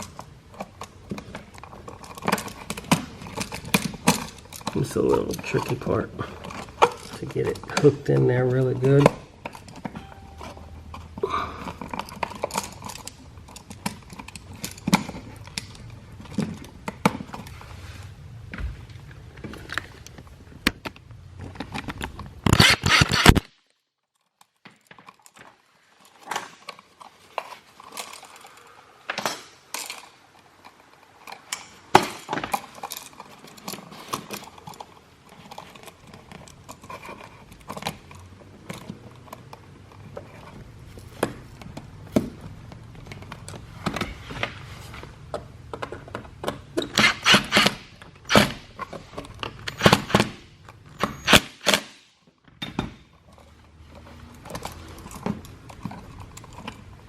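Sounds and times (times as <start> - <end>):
hand tool clicking on wires: 45.7 - 52.0.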